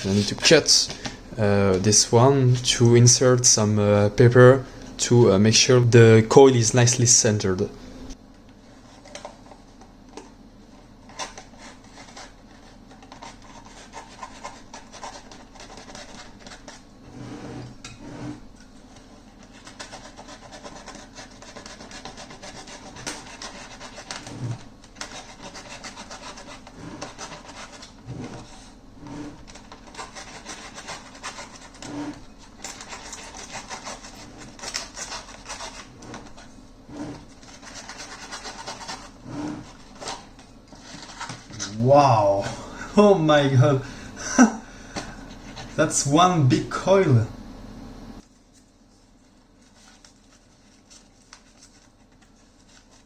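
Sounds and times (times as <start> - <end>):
blade scratching and rasping: 11.1 - 18.6, 19.4 - 41.6.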